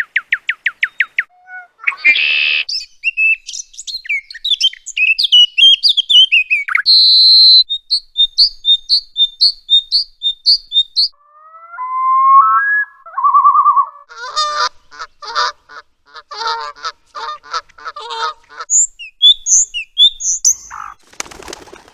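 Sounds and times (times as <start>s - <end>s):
high bird chirps: 0.0s - 15.5s, 18.7s - 21.0s
whistled bird call with trill: 0.2s - 14.1s, 18.7s - 21.0s
harsh honking bird calls: 11.2s - 18.8s.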